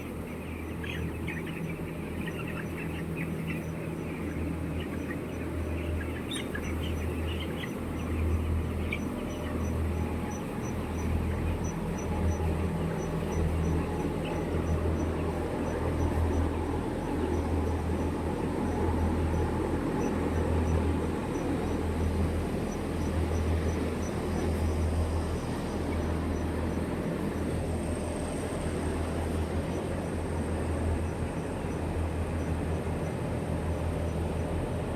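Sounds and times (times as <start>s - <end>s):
chicken calls: 0.0s - 27.8s
continuous low rumble: 0.0s - 34.9s.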